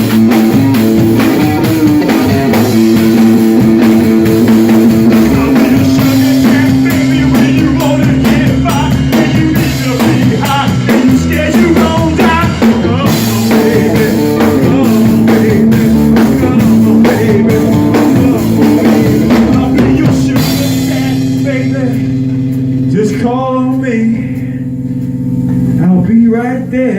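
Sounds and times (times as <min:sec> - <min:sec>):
drum kit beat: 0:00.0 - 0:26.9
electric guitar: 0:00.0 - 0:26.9.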